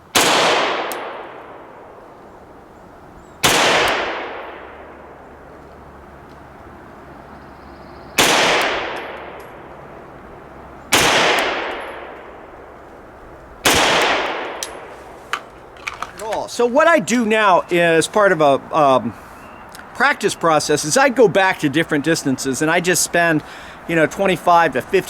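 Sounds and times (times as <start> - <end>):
pistol shots with echo: 0.1 - 2.1, 3.4 - 5.2, 8.2 - 9.8, 10.9 - 12.7, 13.6 - 14.9.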